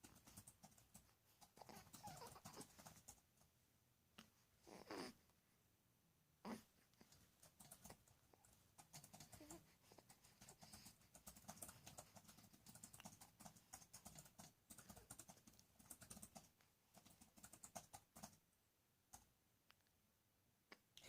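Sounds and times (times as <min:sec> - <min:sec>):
faint irregular clicks: 0:00.0 - 0:03.5, 0:06.9 - 0:18.5, 0:19.1 - 0:20.0.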